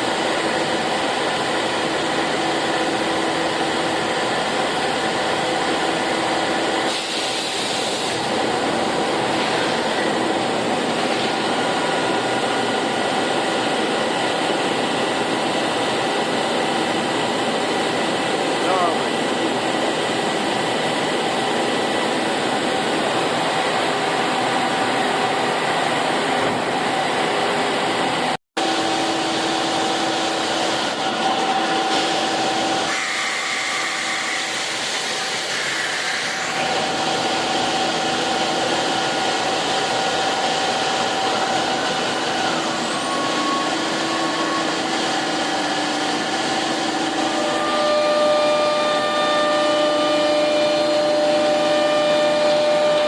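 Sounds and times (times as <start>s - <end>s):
cnc router whirring: 0.0s - 53.0s
spindle whine: 36.5s - 53.0s.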